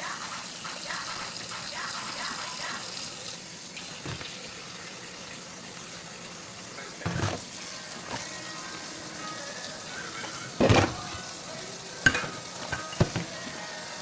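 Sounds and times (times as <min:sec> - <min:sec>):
tap running into sink: 0:03.9 - 0:04.5, 0:07.1 - 0:08.3, 0:10.3 - 0:11.4, 0:12.1 - 0:13.6
dishes clunking: 0:04.0 - 0:04.4, 0:07.0 - 0:08.3, 0:10.2 - 0:11.4, 0:12.0 - 0:13.6.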